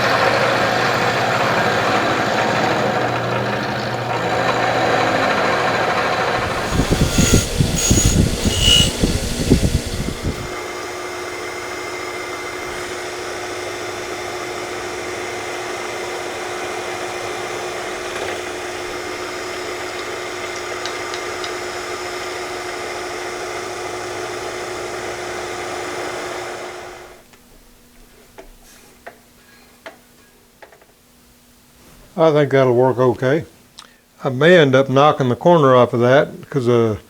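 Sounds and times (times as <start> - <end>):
milling machine cutting steel: 0.0 - 26.9.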